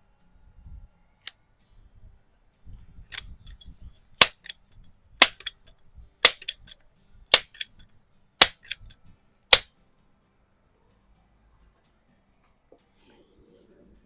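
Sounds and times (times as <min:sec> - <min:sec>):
air rifle shots: 0:04.2 - 0:04.6, 0:05.2 - 0:05.6, 0:06.2 - 0:07.8, 0:08.4 - 0:08.8.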